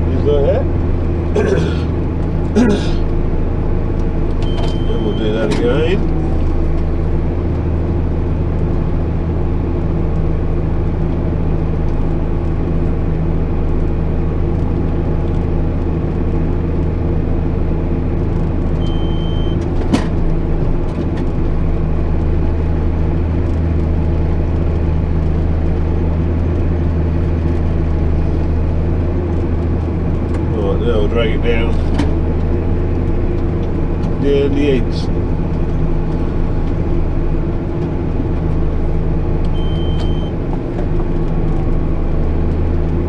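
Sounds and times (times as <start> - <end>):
tractor engine running: 0.0 - 43.0
short electronic beep: 4.4 - 5.3, 18.8 - 19.6, 39.6 - 40.4.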